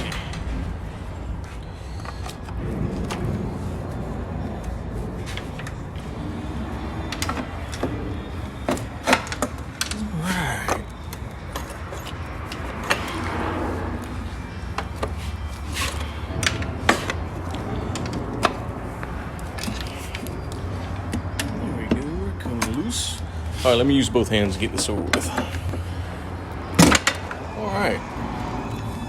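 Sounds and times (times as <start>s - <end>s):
hand tools knocking and clicking: 6.9s - 10.0s.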